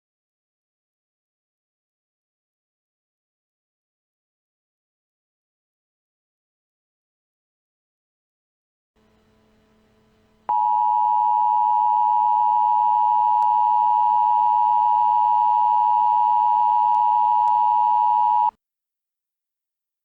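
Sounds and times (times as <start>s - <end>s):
faint radio hiss: 9.0s - 13.6s
loud steady electronic tone: 9.0s - 18.5s.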